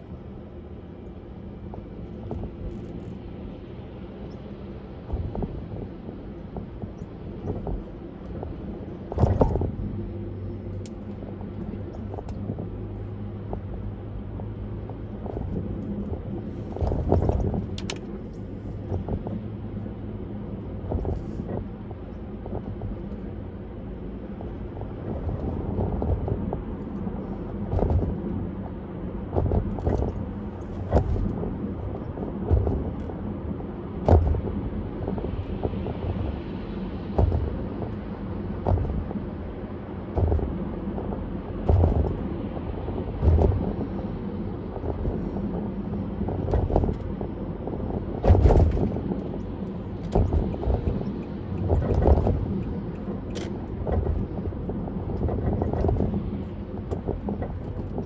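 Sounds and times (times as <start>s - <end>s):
road and engine noise: 0.0s - 58.0s.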